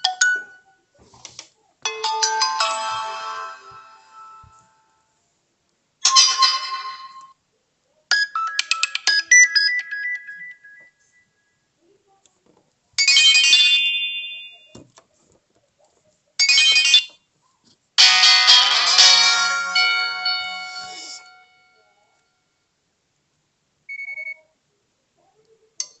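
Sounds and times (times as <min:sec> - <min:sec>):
phone ringtones: 0:01.9 - 0:04.9, 0:08.1 - 0:10.9, 0:13.0 - 0:14.8, 0:16.4 - 0:17.2, 0:18.0 - 0:21.8.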